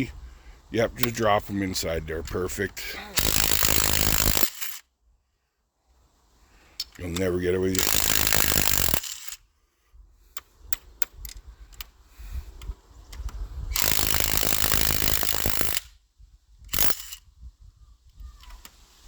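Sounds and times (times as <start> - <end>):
impact wrench running: 2.2 - 4.8, 7.0 - 9.4, 13.8 - 15.9, 16.7 - 17.2.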